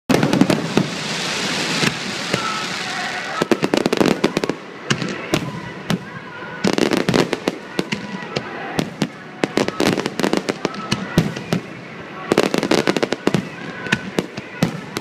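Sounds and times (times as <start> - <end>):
fireworks bangs: 0.1 - 15.0
fireworks crackling pops: 0.1 - 15.0.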